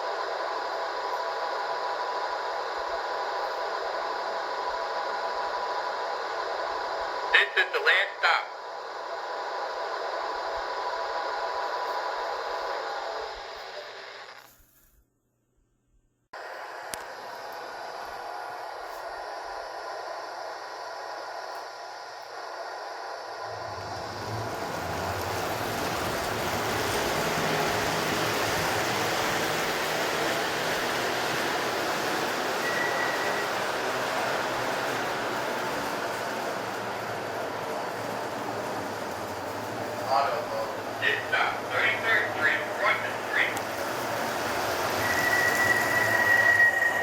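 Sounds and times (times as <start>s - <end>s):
model train rolling on track: 16.9s - 47.0s
faint high squeal: 32.6s - 33.5s, 45.0s - 47.0s.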